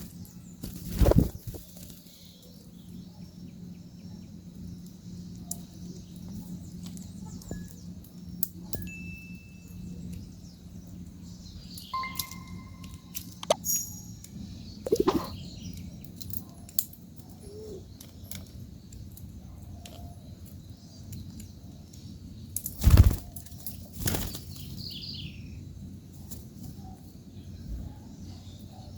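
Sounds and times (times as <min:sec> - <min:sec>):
faint bird chirps: 0:00.0 - 0:16.6, 0:17.2 - 0:18.4
birds' wings flapping: 0:00.6 - 0:02.1, 0:22.8 - 0:24.7.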